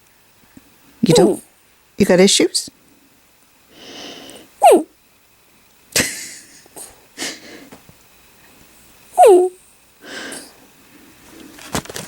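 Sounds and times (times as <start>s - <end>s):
dog grumbling: 1.0s - 1.4s, 9.2s - 9.6s
dog whining: 1.0s - 1.4s, 4.6s - 4.9s, 9.2s - 9.6s.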